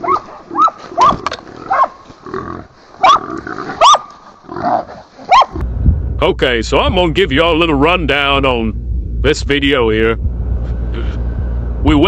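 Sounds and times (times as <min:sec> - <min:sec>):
dogs barking and baying: 0:00.0 - 0:05.6
rough growling: 0:00.0 - 0:05.7.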